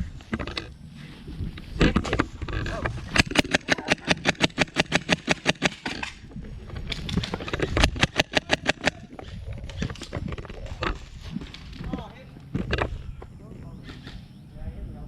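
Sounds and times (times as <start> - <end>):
airsoft gun rapid firing: 3.1 - 6.1, 7.8 - 9.0.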